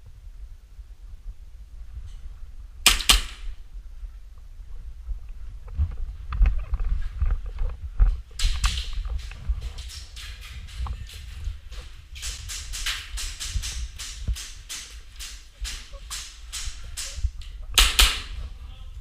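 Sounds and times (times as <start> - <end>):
steady low rumble: 0.0 - 19.0
airsoft pistol shots: 2.9 - 3.6, 17.8 - 18.4
scattered clicks: 8.4 - 18.4.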